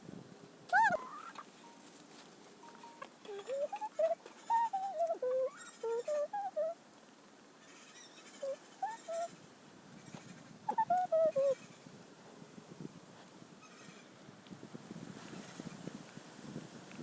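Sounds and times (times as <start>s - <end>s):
hens calling: 0.7s - 6.8s, 7.6s - 12.0s.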